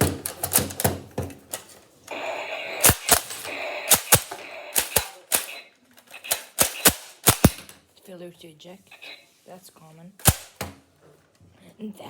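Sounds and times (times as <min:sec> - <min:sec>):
shotgun metallic clicks: 0:02.8 - 0:07.8, 0:10.2 - 0:10.6.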